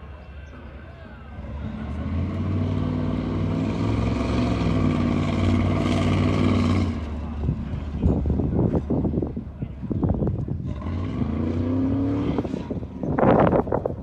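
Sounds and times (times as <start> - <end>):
van engine revving hard: 1.5 - 7.1, 10.7 - 12.8.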